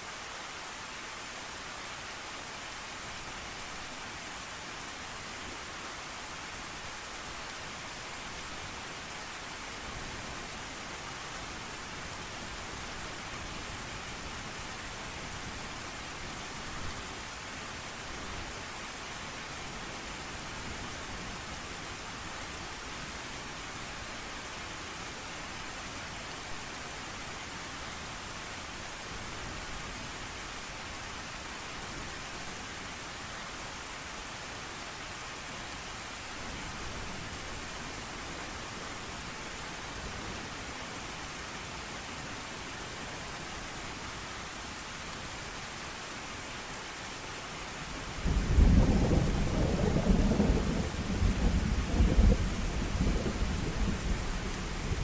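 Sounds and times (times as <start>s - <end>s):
steady rain: 0.0s - 55.0s
thunder rumbling: 48.3s - 55.0s.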